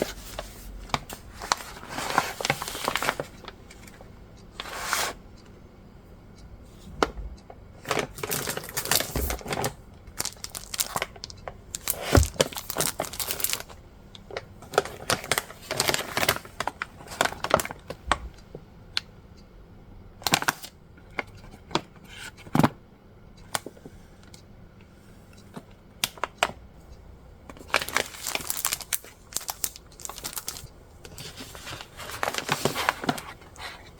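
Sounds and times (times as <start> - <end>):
packaging rustling and tearing: 8.0 - 13.7, 27.6 - 33.9.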